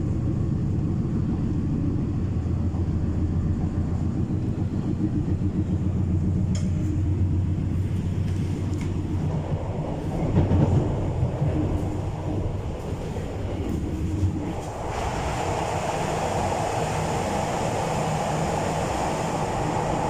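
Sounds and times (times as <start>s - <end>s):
electric train rumbling on track: 0.0s - 20.0s
faint rail clicks: 6.4s - 6.9s, 8.2s - 9.0s.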